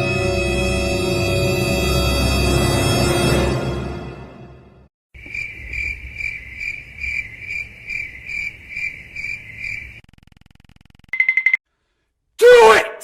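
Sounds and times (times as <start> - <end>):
eerie music: 0.0 - 4.9
cricket chirping: 5.2 - 11.6.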